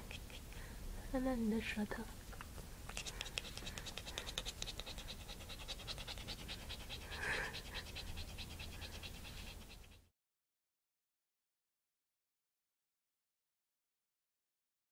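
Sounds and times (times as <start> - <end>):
puppy panting: 0.0 - 0.7, 2.9 - 10.1.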